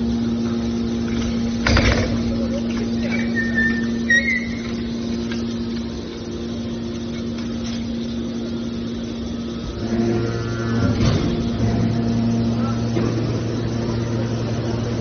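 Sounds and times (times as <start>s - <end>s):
hydraulic power unit humming: 0.0s - 15.0s
high squeal: 3.0s - 5.0s.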